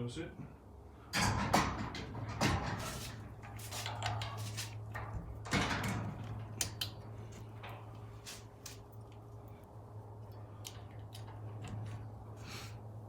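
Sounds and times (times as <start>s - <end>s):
steady low hum: 0.0s - 13.0s
metal clunks and scraping: 1.1s - 8.6s.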